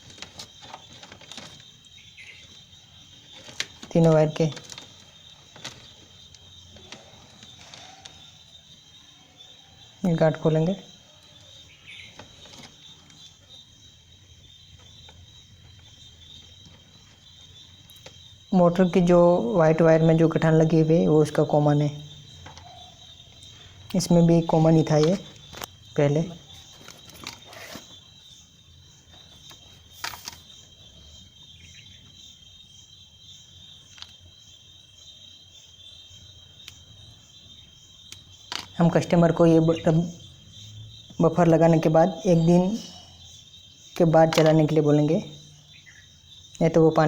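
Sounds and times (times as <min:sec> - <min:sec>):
faint clicks and rustles: 0:00.0 - 0:09.2, 0:10.9 - 0:18.5, 0:21.2 - 0:32.2
crickets chirring: 0:00.0 - 0:47.0.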